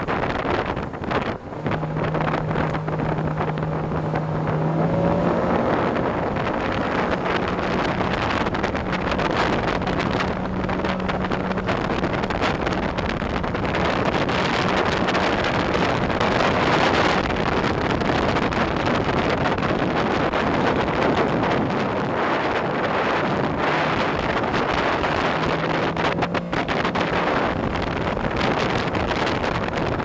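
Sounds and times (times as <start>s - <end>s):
rushing water: 0.0s - 30.0s
wind buffeting microphone: 0.0s - 30.0s.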